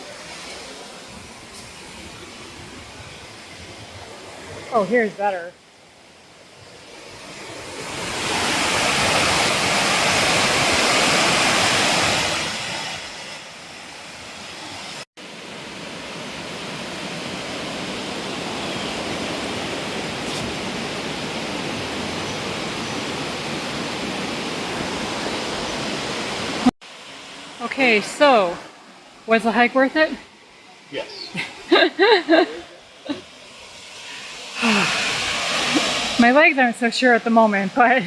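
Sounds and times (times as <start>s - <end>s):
waterfall rushing: 7.3s - 29.8s, 30.6s - 38.0s.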